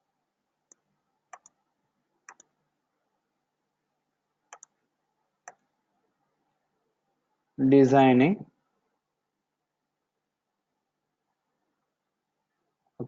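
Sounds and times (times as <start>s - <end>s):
computer mouse clicking: 0.7s - 1.6s, 2.2s - 2.6s, 4.5s - 4.8s, 5.4s - 5.7s.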